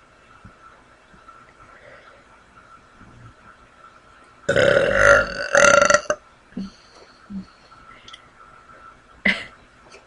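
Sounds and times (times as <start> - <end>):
faint small sounds: 0.0 - 4.5
woman burping loudly: 4.5 - 6.2.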